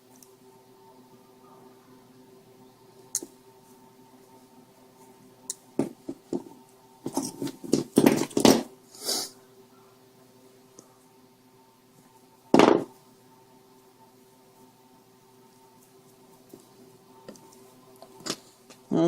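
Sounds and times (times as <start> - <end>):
faint steady hum: 0.0 - 19.0
scraping and rustling of wires: 6.2 - 8.6.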